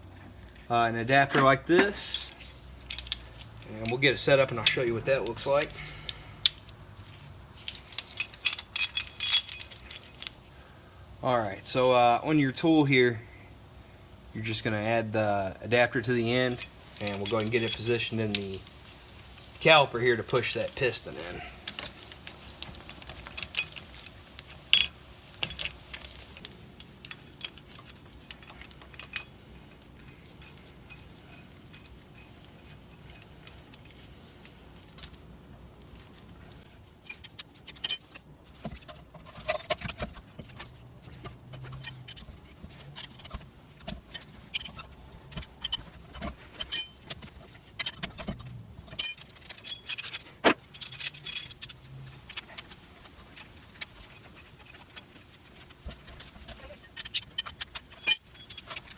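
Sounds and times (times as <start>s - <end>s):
metallic tool clinks and clicks: 1.3s - 6.7s, 7.7s - 10.4s, 16.5s - 18.6s, 22.6s - 34.0s, 37.0s - 40.0s, 40.6s - 55.1s, 55.9s - 58.9s.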